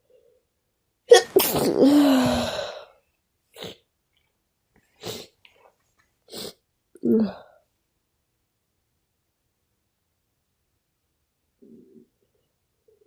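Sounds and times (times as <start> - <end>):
person sneezing: 1.1 - 2.8.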